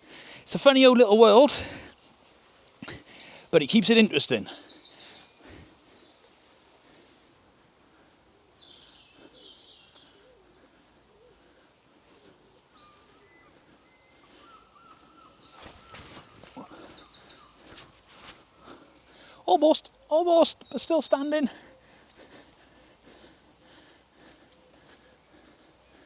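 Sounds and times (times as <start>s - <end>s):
songbirds singing: 0.0s - 26.0s
bird trills: 12.6s - 17.8s.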